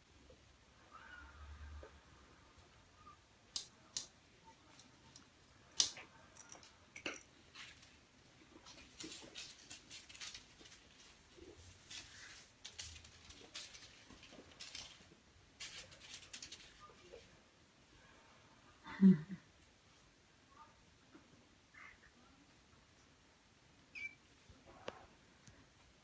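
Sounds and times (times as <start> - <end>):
small paws pattering and scrabbling: 3.6 - 17.5.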